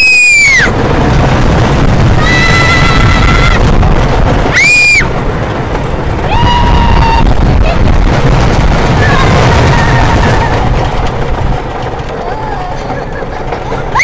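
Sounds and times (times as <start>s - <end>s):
riders screaming: 0.0s - 0.8s, 2.1s - 3.8s, 4.4s - 5.1s, 6.2s - 7.9s, 8.9s - 10.9s
rumble of park and ride: 0.0s - 14.0s.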